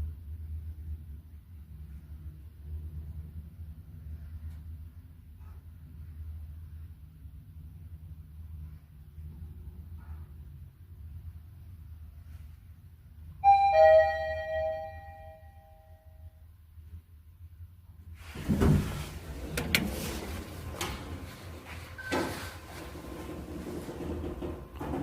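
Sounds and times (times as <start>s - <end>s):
elevator two-note chime: 13.4s - 16.2s
elevator doors sliding open: 18.2s - 25.0s.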